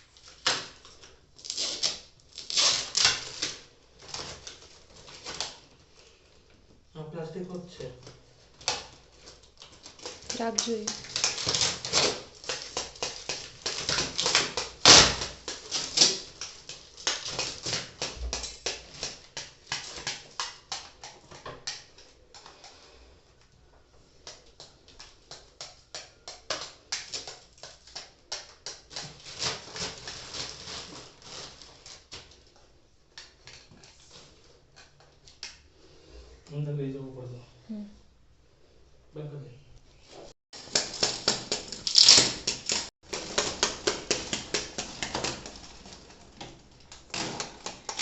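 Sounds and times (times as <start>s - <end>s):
plastic packaging crinkling: 8.5s - 21.0s, 40.6s - 48.0s.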